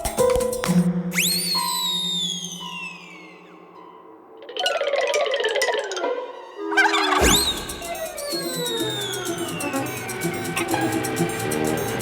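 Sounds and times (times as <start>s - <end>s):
cartoon soundtrack music: 0.0s - 12.0s
slowly falling whistle: 1.1s - 4.1s, 6.8s - 12.0s.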